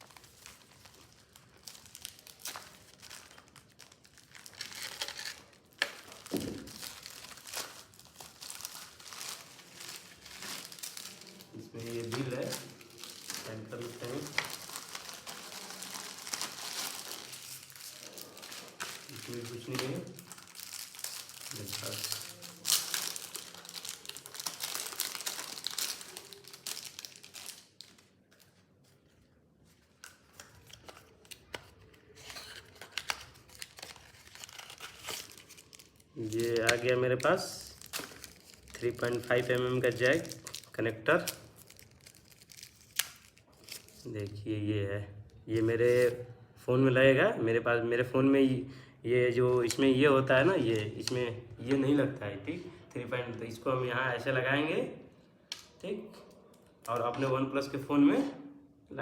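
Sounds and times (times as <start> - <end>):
packaging crinkling and rustling: 0.0 - 44.3.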